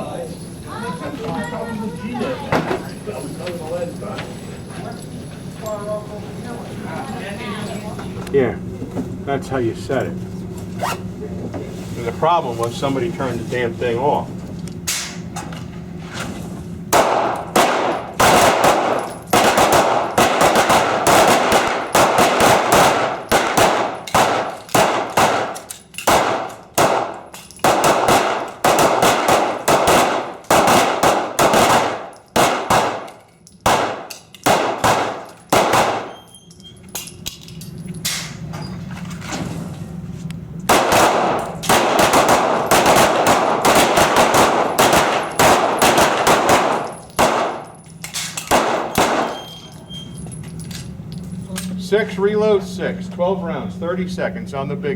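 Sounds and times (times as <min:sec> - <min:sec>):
pistols firing rapidly: 0:16.9 - 0:36.2, 0:40.7 - 0:47.7, 0:48.4 - 0:49.5.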